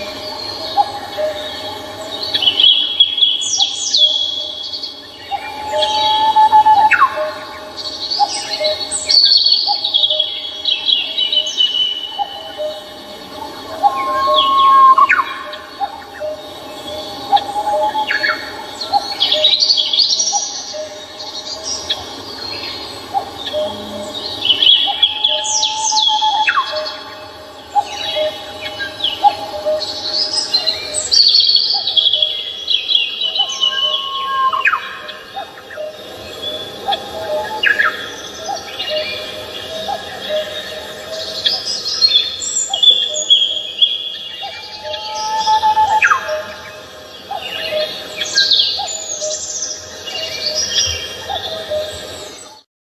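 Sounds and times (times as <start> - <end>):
birds chirping and trilling: 0.0 - 52.6
high bird chirps and whistles: 13.8 - 15.6.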